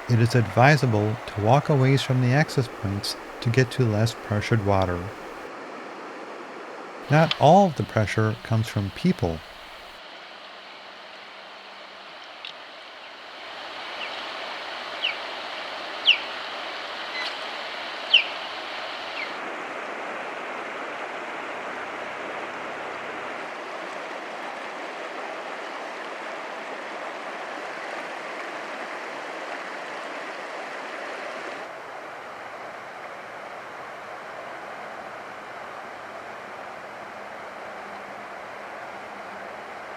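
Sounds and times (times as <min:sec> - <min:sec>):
river water running: 0:00.0 - 0:06.3, 0:07.0 - 0:11.5.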